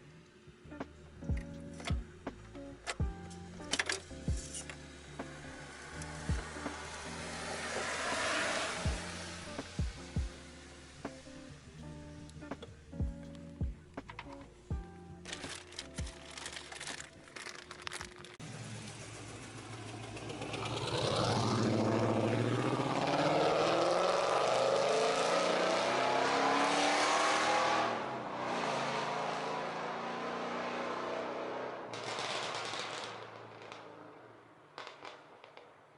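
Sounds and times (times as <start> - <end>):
car engine accelerating: 0.6 - 13.4, 18.4 - 34.2.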